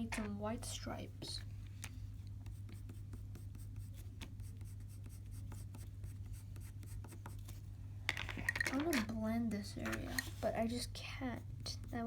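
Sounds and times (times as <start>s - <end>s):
steady low hum: 0.0s - 12.0s
pencil scratching on paper: 2.3s - 7.6s, 10.1s - 12.0s.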